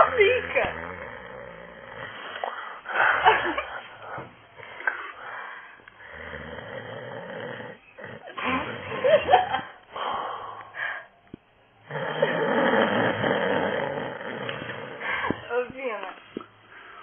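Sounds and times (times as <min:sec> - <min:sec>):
man snoring heavily: 0:00.0 - 0:02.4, 0:06.0 - 0:10.6, 0:11.8 - 0:15.2.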